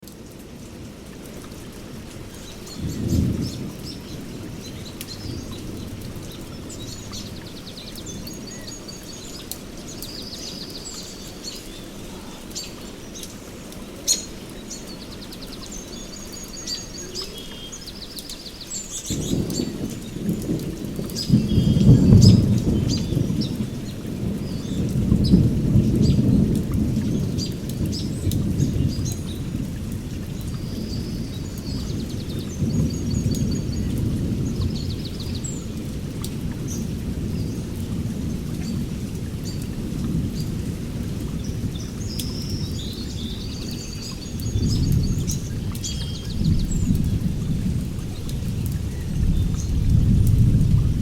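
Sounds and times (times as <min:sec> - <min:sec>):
steady rain: 0:00.0 - 0:51.0
thunder rumbling: 0:02.3 - 0:08.7, 0:19.0 - 0:51.0
birds chirping and trilling: 0:02.3 - 0:20.4, 0:21.0 - 0:26.3.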